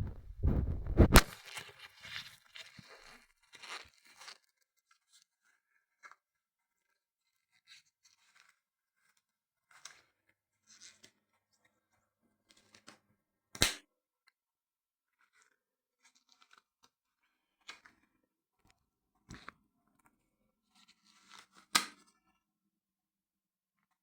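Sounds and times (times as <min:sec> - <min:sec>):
scraping and tearing: 0:00.0 - 0:01.3
sharp knock: 0:00.0 - 0:01.3.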